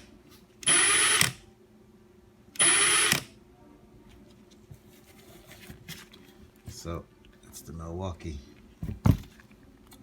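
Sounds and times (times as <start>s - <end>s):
impact wrench whining bursts: 0.6s - 1.4s, 2.6s - 3.3s.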